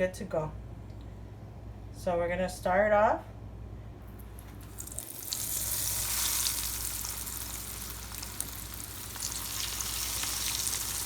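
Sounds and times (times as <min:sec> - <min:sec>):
chicken sizzling in hot oil: 0:04.7 - 0:11.0.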